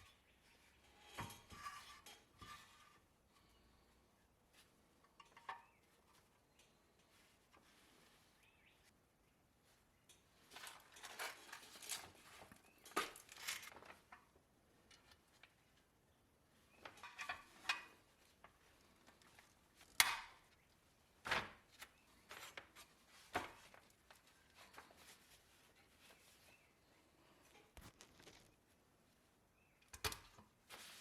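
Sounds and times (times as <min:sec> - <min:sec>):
scraping and rustling: 0:00.0 - 0:08.7, 0:10.3 - 0:14.3, 0:21.4 - 0:28.8, 0:30.6 - 0:31.0.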